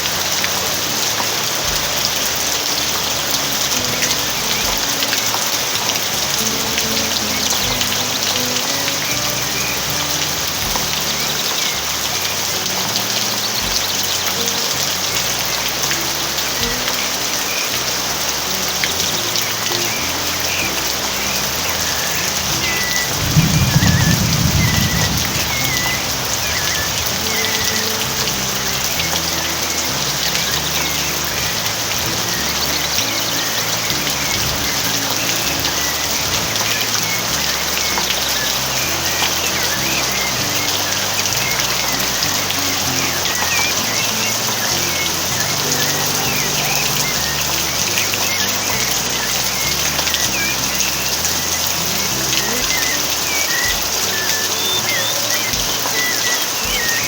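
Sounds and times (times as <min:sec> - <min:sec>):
steady rain falling: 0:00.0 - 0:57.0
bird chirps: 0:18.9 - 0:31.3, 0:32.2 - 0:57.0
low rumble: 0:21.5 - 0:29.4.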